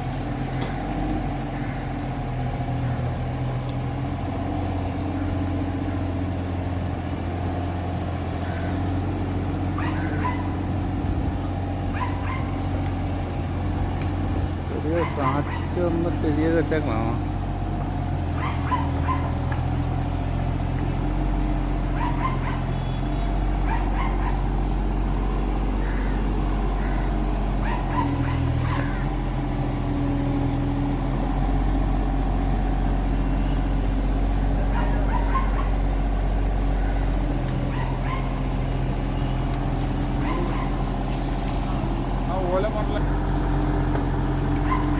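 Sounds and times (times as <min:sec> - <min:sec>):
excavator diesel engine running: 0:00.0 - 0:44.9
short high yelps: 0:09.8 - 0:10.6.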